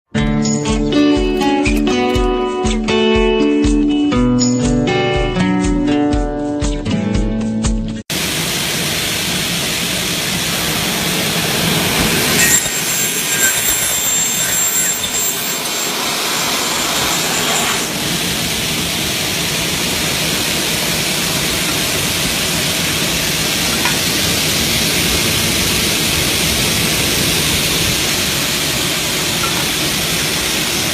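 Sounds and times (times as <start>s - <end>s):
saw machine whirring: 8.1s - 30.9s.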